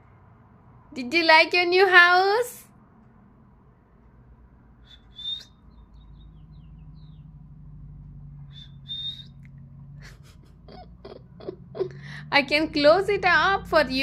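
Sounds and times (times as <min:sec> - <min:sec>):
cockatiel chirping: 0:04.9 - 0:06.4, 0:08.5 - 0:09.4.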